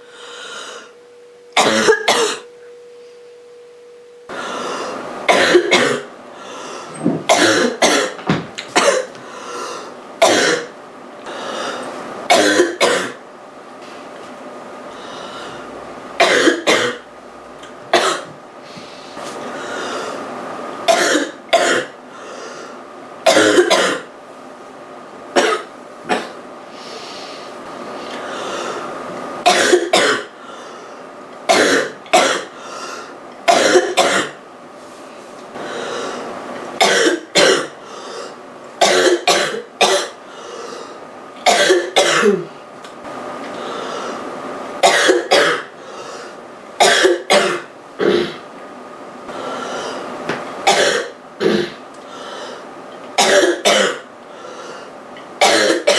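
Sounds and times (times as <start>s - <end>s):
girl coughing: 1.6s - 2.4s, 5.3s - 6.1s, 7.0s - 9.1s, 10.2s - 10.7s, 12.3s - 13.2s, 16.2s - 17.0s, 17.9s - 18.3s, 20.9s - 22.0s, 23.3s - 24.1s, 25.4s - 26.4s, 29.4s - 30.3s, 31.5s - 32.5s, 33.5s - 34.4s, 36.8s - 37.8s, 38.8s - 40.2s, 41.4s - 42.6s, 44.8s - 45.7s, 46.8s - 48.4s, 50.7s - 51.8s, 53.2s - 54.1s, 55.4s - 55.9s.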